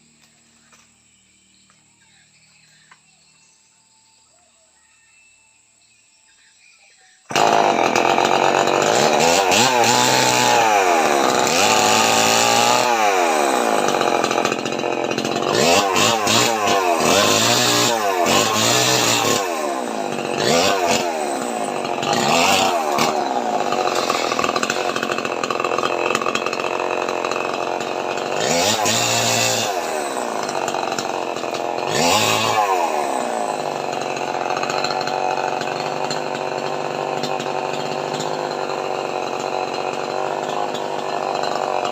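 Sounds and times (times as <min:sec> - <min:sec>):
chainsaw revving: 0:07.3 - 0:41.9.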